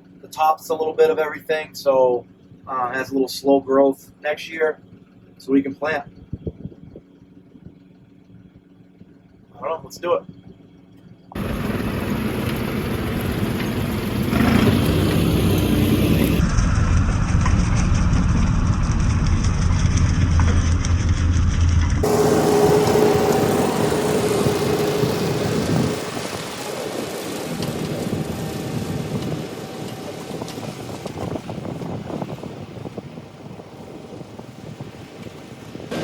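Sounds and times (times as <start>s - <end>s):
steady whine: 0.0s - 36.0s
tractor engine running: 0.0s - 36.0s.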